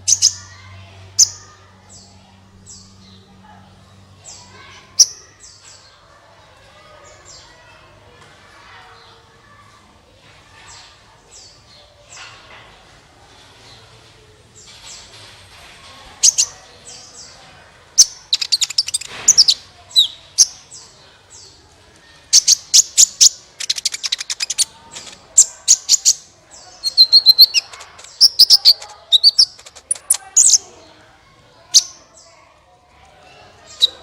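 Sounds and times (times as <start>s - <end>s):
rapid chattering bird trills: 0.0s - 0.6s, 16.2s - 17.2s, 18.0s - 20.8s, 22.3s - 30.8s
high thin bird chirps: 18.0s - 20.6s, 22.3s - 30.7s.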